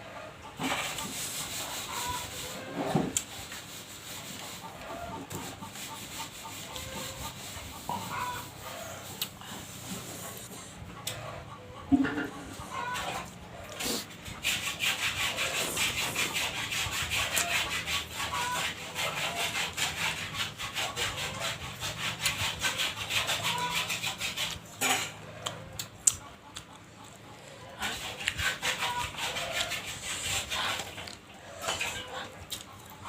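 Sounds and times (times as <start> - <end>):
person chewing food: 9.1 - 11.2, 25.4 - 28.4, 32.2 - 33.0.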